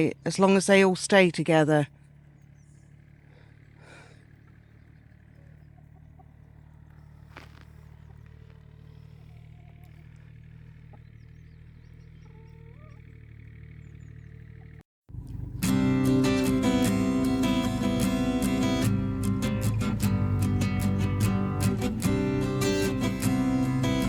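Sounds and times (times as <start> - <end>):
chickens clucking: 2.0 - 13.5.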